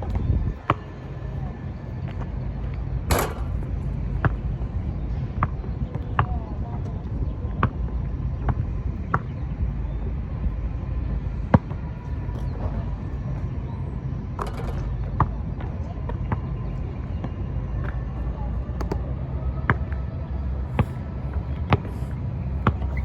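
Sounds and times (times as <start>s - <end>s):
wind buffeting microphone: 0.0s - 16.1s.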